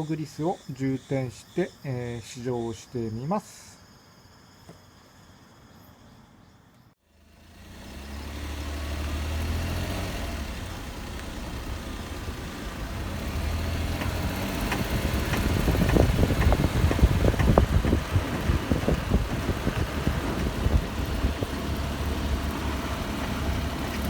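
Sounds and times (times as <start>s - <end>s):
car engine and road hum: 7.1s - 24.0s
knocks and rattles: 11.0s - 21.8s.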